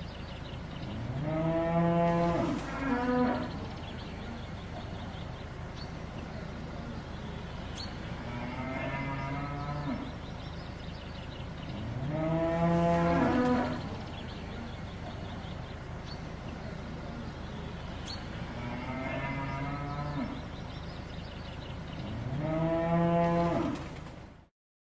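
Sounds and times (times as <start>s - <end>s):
cow mooing: 0.9s - 3.7s, 8.2s - 10.3s, 11.7s - 14.0s, 18.4s - 20.6s, 22.0s - 23.9s.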